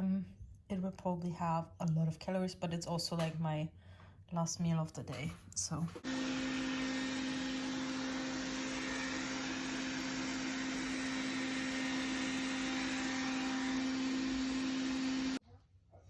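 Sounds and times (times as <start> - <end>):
electric appliance motor whirring: 6.0 - 15.4.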